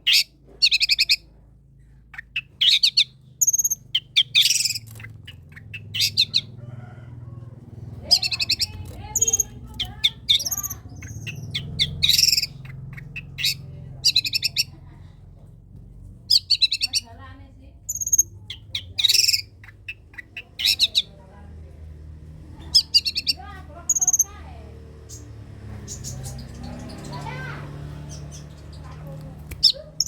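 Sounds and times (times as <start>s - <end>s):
shrike singing rapid notes: 2.2s - 6.9s, 7.6s - 14.8s, 17.9s - 21.1s.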